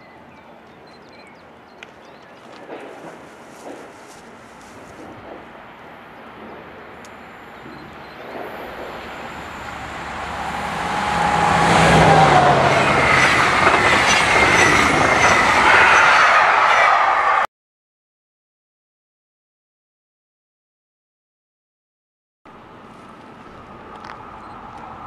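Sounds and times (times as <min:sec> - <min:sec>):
train passing close by: 0:00.0 - 0:17.5, 0:22.5 - 0:25.0.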